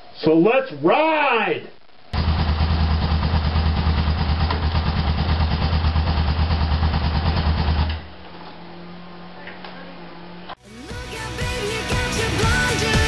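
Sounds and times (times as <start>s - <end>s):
motorcycle engine idling: 2.2s - 8.2s.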